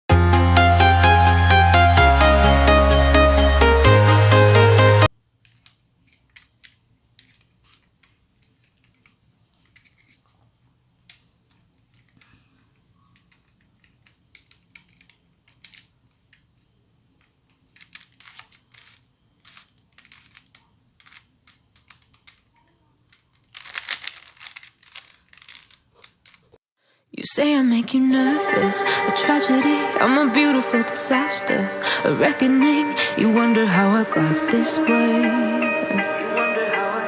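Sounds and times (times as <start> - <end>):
plastic puzzle clicking: 5.4 - 10.4, 11.0 - 16.6, 17.2 - 26.6.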